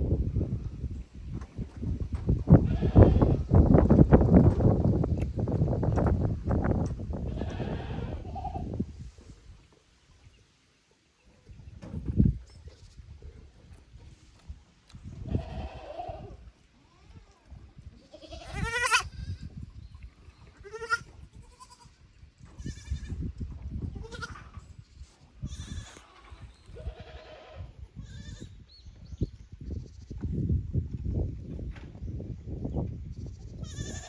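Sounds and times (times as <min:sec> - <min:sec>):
goats bleating: 0:07.3 - 0:08.6, 0:15.3 - 0:16.4, 0:18.0 - 0:19.4, 0:20.6 - 0:22.0.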